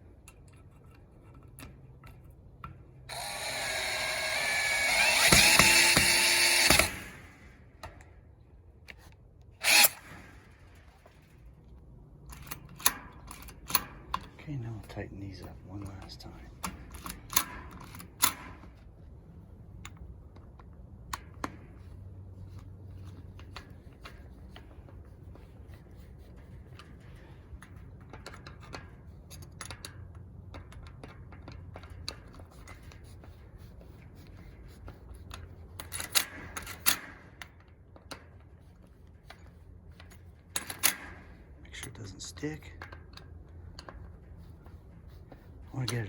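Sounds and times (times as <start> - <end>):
steady low hum: 0.0 - 29.9
screwdriver clicks and metal taps: 0.2 - 8.1, 8.8 - 11.2, 12.3 - 18.7, 27.5 - 33.0, 35.3 - 44.2.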